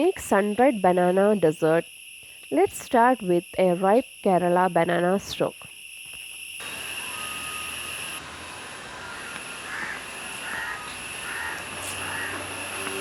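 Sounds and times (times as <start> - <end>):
high-pitched insect drone: 5.6 - 13.0
crow cawing: 6.6 - 13.0.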